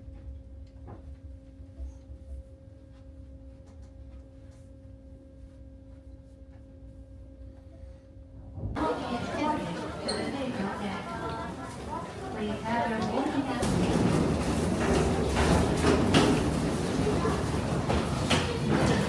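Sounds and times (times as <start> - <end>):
steady low hum: 0.0 - 10.0
low rumble: 8.4 - 8.8.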